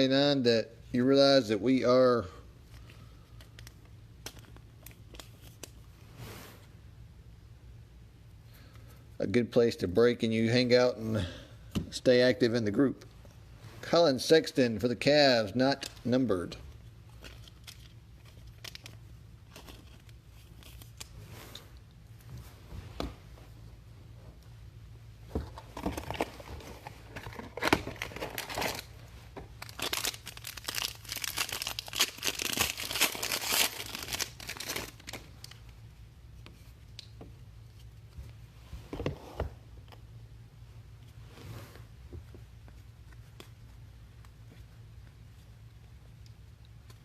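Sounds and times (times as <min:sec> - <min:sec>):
low steady hum: 0:00.0 - 0:47.0
card packs tearing and crinkling: 0:25.8 - 0:35.6.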